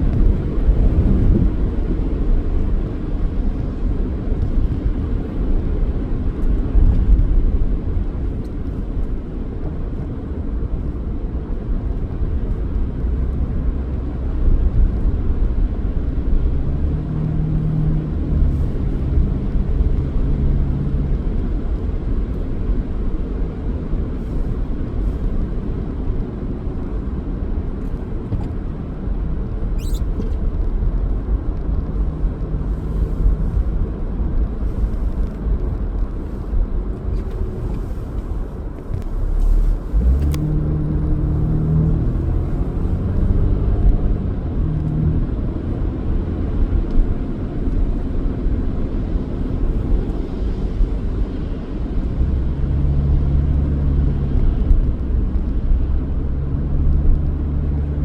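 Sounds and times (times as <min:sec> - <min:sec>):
car engine and road noise: 0:00.0 - 0:58.0.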